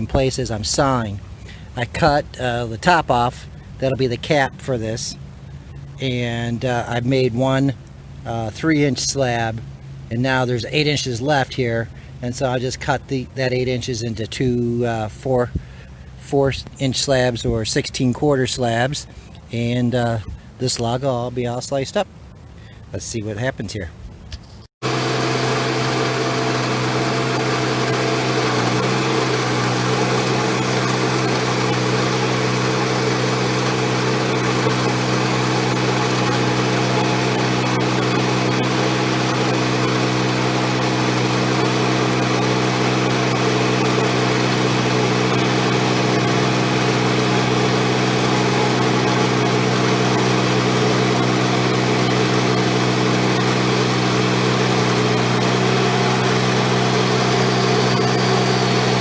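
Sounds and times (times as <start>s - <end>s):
bandsaw sawing log: 24.9s - 59.0s.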